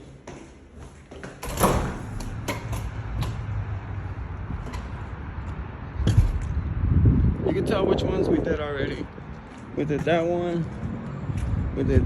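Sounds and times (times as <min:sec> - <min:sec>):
door opening sweep: 0:01.3 - 0:03.5
steady low rumble: 0:01.8 - 0:10.1.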